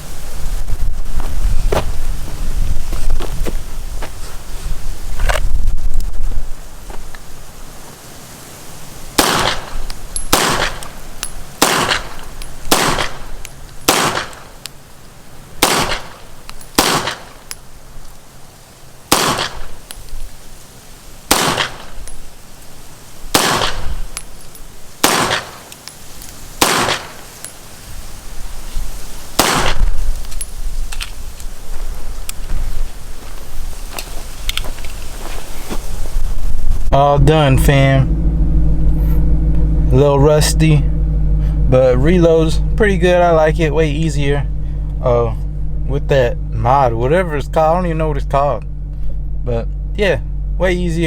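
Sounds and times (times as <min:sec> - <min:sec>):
rifle shots with echo: 0:09.2 - 0:11.0, 0:11.6 - 0:14.6, 0:15.6 - 0:16.2, 0:16.8 - 0:17.4, 0:19.1 - 0:19.7, 0:21.3 - 0:22.0, 0:23.3 - 0:24.0, 0:25.0 - 0:25.7, 0:26.6 - 0:27.3, 0:29.4 - 0:29.9.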